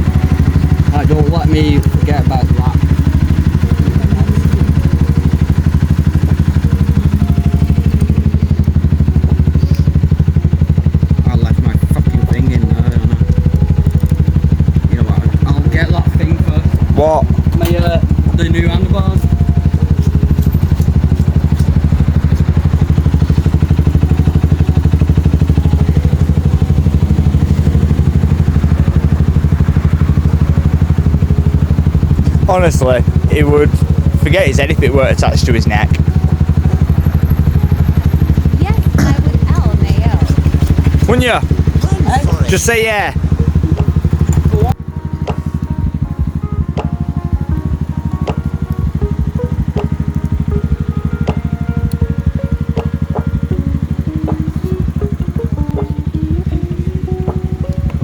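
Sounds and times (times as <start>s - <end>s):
motorcycle engine idling: 0.0s - 58.0s.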